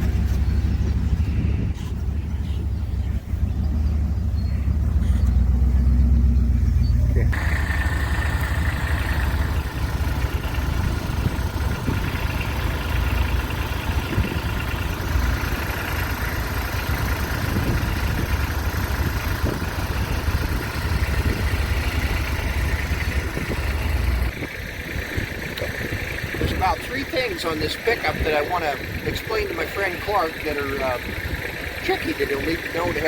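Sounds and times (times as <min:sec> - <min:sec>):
vehicle engine rumbling: 0:00.0 - 0:33.0.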